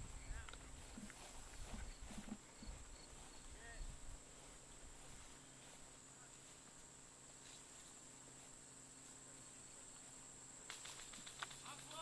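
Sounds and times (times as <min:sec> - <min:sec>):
quick clicks: 0:10.7 - 0:12.0.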